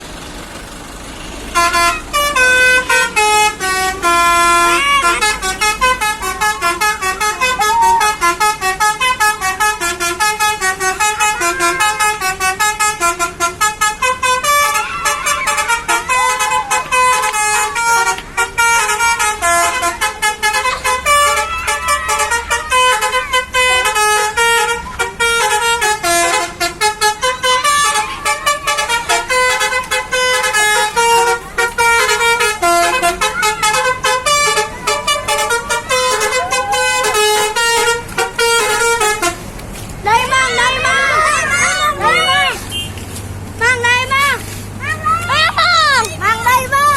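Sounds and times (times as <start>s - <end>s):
multi-tone bus horn playing a tune: 1.0s - 44.8s.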